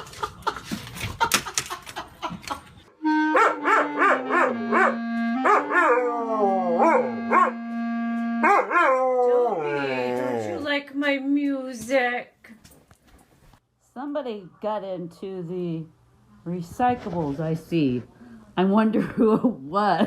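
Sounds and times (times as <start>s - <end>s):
instrument holding steady notes: 3.0s - 8.6s
dog howling: 3.6s - 7.5s, 8.4s - 10.6s.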